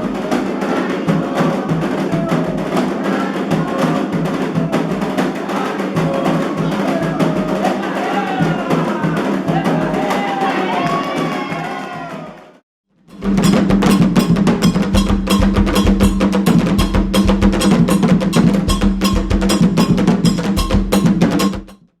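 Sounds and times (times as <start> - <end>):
percussion music: 0.0 - 12.4, 13.1 - 22.0.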